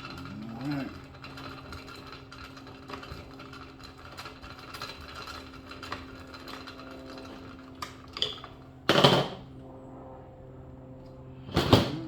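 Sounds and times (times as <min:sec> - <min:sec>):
tools rattling and clicking: 0:00.0 - 0:09.3
steady low hum: 0:00.0 - 0:12.0.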